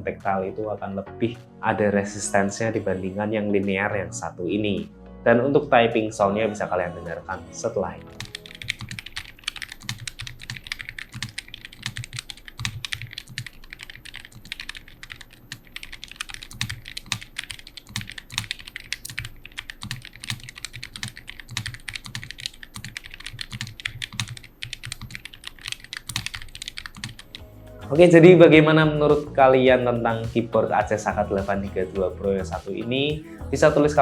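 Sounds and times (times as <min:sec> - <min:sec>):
mechanical keyboard typing: 0:08.0 - 0:27.4.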